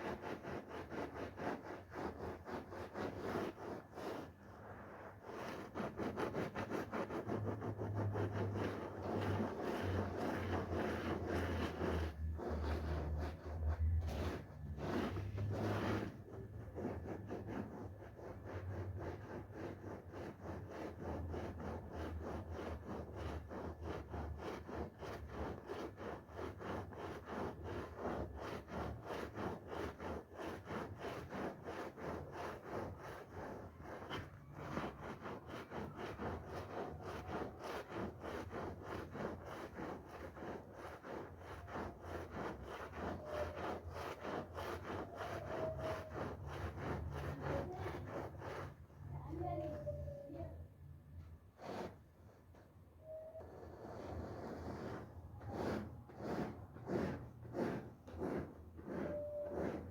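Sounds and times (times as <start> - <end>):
brush scrubbing carpet: 0.0 - 50.6, 51.6 - 59.9.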